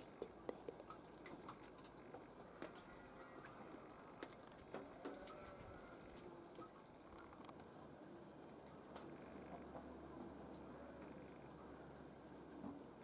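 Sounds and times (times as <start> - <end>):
water drops dripping: 0.0 - 3.5.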